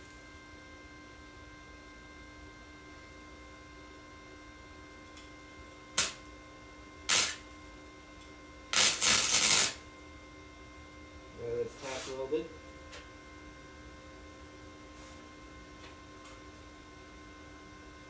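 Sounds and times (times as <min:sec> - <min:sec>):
steady electrical hum: 0:00.0 - 0:18.0
welding arc crackling: 0:06.0 - 0:06.3, 0:07.1 - 0:07.6, 0:08.7 - 0:09.8.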